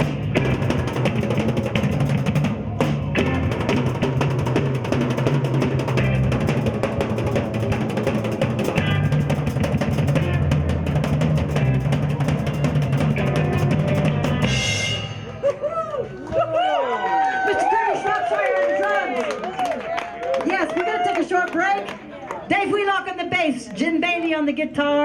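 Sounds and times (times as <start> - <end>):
guitar: 0.0 - 15.6
drum kit steady beat: 0.0 - 15.7
held bass line: 0.0 - 15.9.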